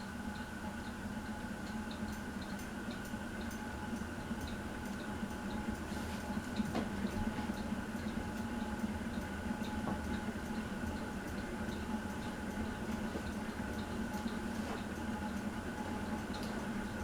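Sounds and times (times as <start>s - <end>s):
ceiling fan motor hum: 0.0s - 17.0s
fan ticking: 6.6s - 17.0s.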